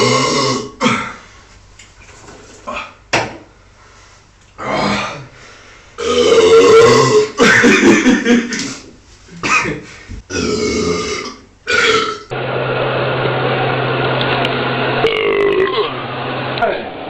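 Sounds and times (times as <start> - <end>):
man belching: 0.0 - 1.2, 6.0 - 7.6, 10.3 - 12.3, 15.0 - 15.9.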